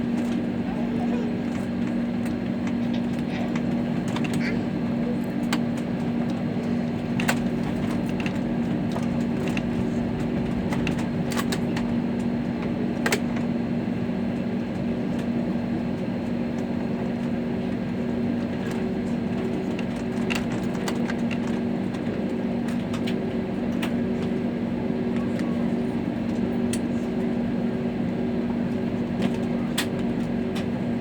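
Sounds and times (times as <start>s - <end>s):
airliner cabin hum: 0.0s - 31.0s.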